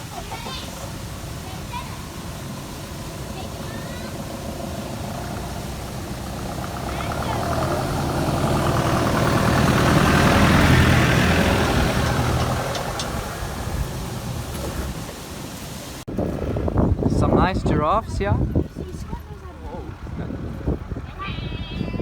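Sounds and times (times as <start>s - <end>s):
vehicle engine drone: 0.0s - 17.3s
rushing noise: 0.0s - 17.9s.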